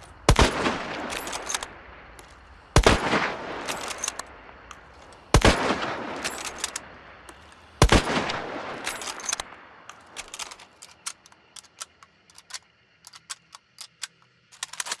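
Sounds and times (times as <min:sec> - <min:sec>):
sharp metallic clicks: 0:00.0 - 0:03.0, 0:03.6 - 0:15.0
rifle shots echoing: 0:00.2 - 0:10.5.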